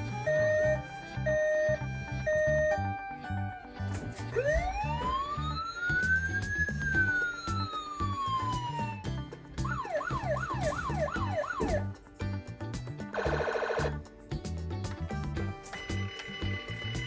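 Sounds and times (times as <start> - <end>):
toy siren wailing: 0.2 - 2.8.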